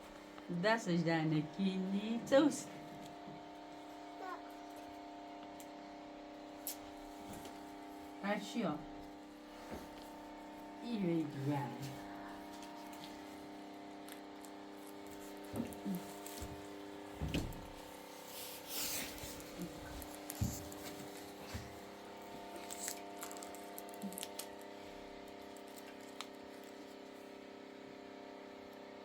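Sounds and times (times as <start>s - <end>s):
steady low hum: 0.0s - 25.6s
knocks and rustles of handling: 14.8s - 24.4s.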